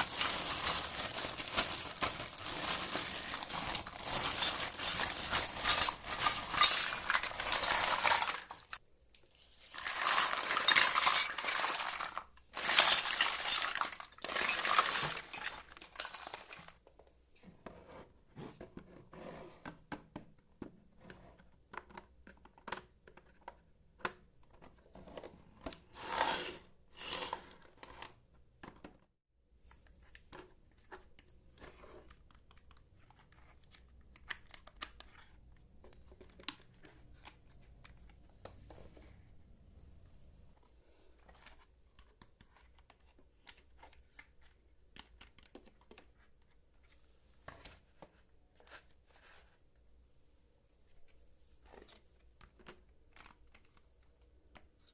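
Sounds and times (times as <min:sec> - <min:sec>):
toy kitchen pieces clinking: 0:00.0 - 0:08.8, 0:09.8 - 0:16.7.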